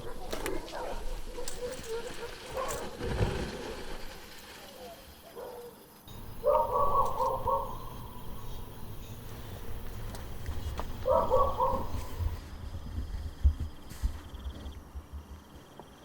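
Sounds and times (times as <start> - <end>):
bird calling: 4.8 - 12.4.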